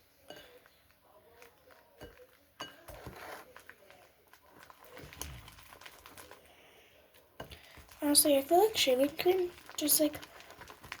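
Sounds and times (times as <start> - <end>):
slime squishing by hand: 0.0 - 11.0.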